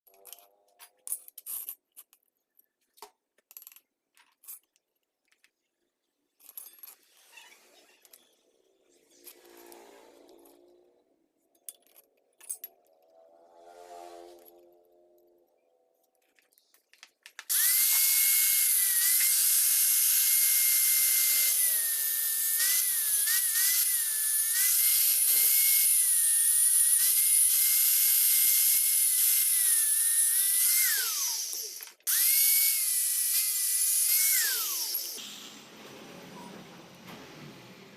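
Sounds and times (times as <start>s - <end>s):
angle grinder cutting metal pipe: 17.5s - 35.6s.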